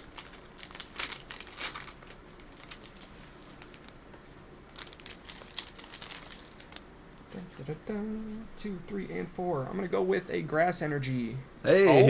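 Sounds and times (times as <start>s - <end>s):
foil wrapper crinkling: 0.0s - 7.3s.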